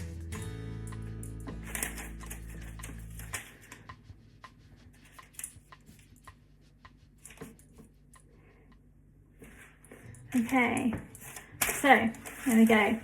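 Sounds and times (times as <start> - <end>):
background music: 0.0 - 7.4
hands shaping bread dough: 1.0 - 13.0.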